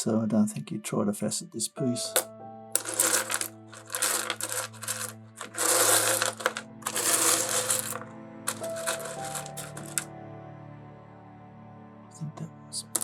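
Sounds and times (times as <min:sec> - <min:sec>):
soft background music: 0:00.0 - 0:13.0
stones rattling on a tray: 0:02.2 - 0:10.1.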